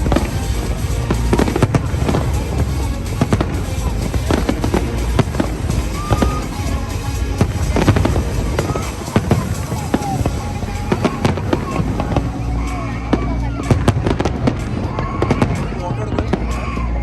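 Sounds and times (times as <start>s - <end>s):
fireworks bangs and booms: 0.0s - 12.3s
background music: 0.0s - 17.0s.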